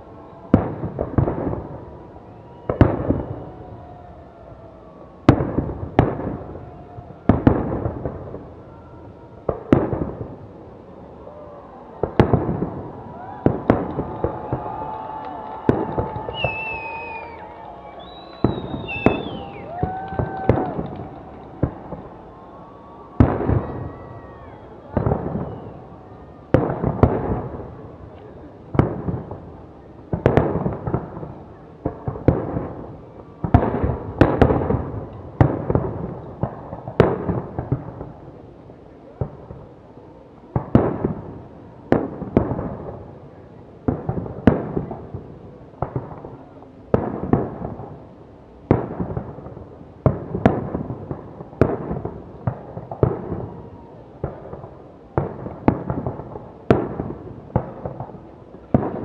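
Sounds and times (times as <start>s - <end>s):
fireworks shells bursting: 15.6s - 22.2s.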